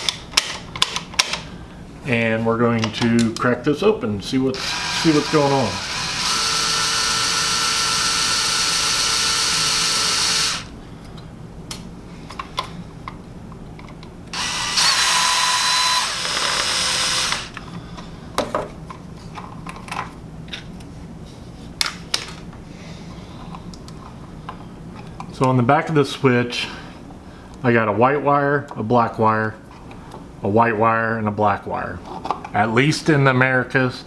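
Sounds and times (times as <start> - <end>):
clicks and knocks of handling: 0.0 - 1.5, 17.6 - 20.9
power drill motor whirring: 4.6 - 10.7, 14.3 - 17.6.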